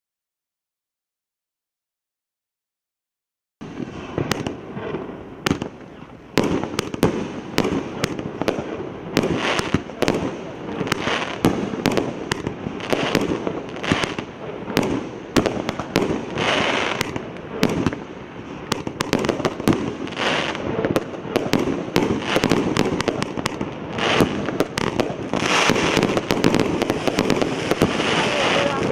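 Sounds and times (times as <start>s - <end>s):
firework hiss: 3.7s - 28.9s
firework battery reports: 15.8s - 28.9s.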